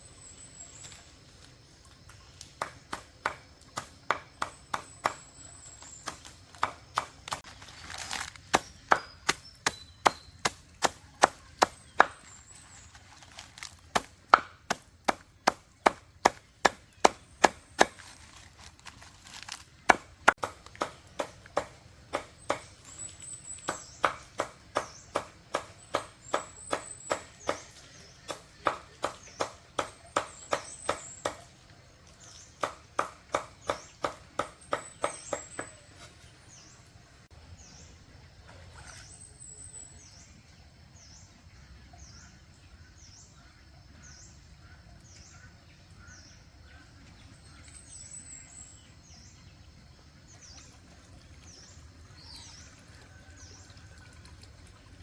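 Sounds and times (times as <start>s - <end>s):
blade chopping: 6.0s - 12.4s, 13.6s - 31.4s.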